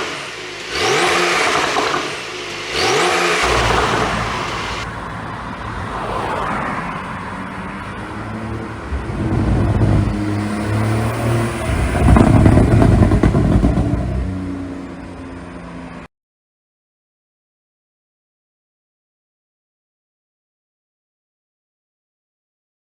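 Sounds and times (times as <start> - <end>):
exhaust crackling: 0.0 - 15.5
car engine revving: 0.0 - 16.0.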